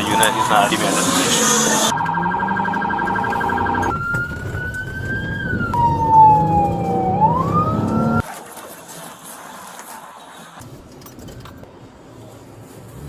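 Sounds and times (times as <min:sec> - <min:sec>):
police siren wailing: 0:00.0 - 0:08.2.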